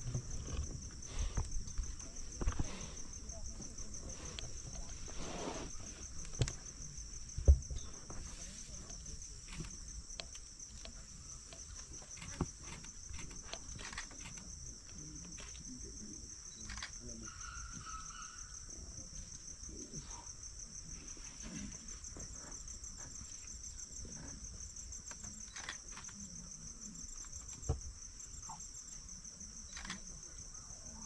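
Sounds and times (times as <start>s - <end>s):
insect chorus buzzing: 0.0s - 31.0s.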